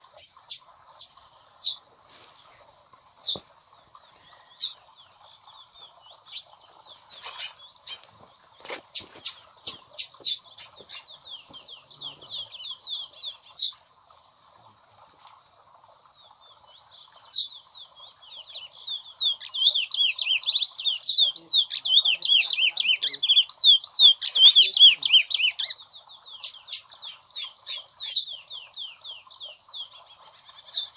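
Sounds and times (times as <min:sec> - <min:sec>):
finches calling sharp chips: 0:04.3 - 0:13.8, 0:18.7 - 0:25.8.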